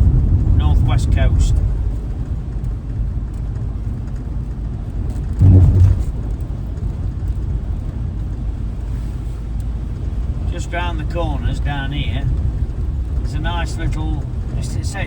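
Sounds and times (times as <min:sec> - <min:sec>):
engine and road rumble: 0:00.0 - 0:15.0
brief loud low sound: 0:05.4 - 0:06.4.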